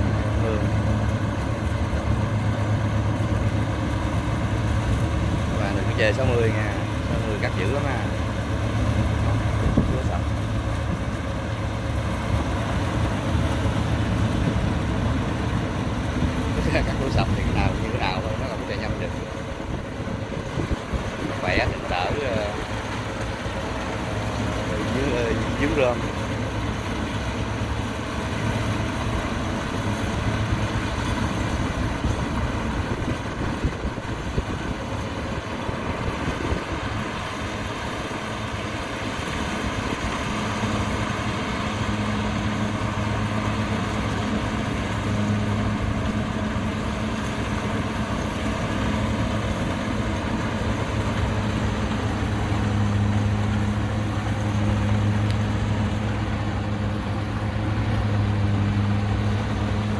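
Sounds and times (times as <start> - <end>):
combine harvester engine drone: 0.0 - 59.9.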